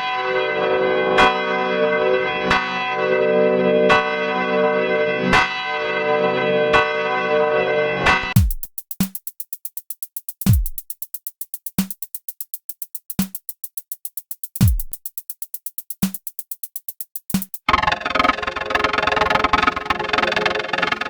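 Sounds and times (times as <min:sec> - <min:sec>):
deep kick drums: 0:08.4 - 0:08.7, 0:10.5 - 0:10.9, 0:14.6 - 0:15.0
pitched drum hits: 0:08.4 - 0:16.5
hi-hat ticks: 0:08.4 - 0:17.8.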